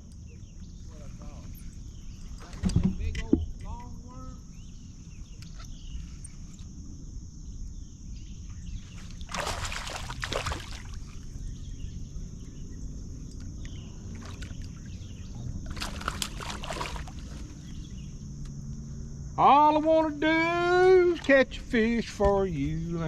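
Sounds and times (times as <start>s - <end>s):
water splashing around boat: 9.0s - 11.4s, 13.6s - 17.8s.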